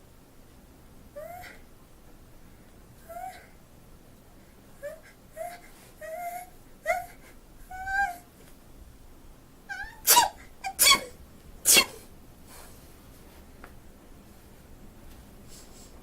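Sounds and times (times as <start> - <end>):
woman sneezing: 10.0 - 12.1.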